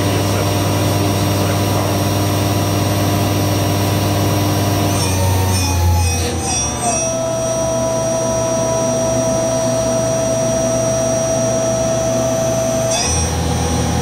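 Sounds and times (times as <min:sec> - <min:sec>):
machine spindle whine: 0:00.0 - 0:14.0.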